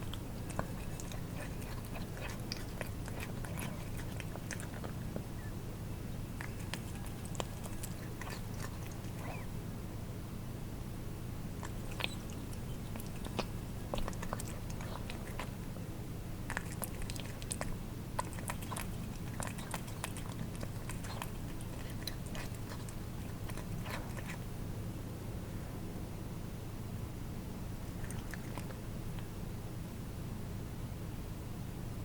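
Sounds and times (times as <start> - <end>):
cats lapping and chewing: 0.0 - 9.6, 11.4 - 24.6, 27.8 - 29.4
steady low hum: 0.0 - 32.0.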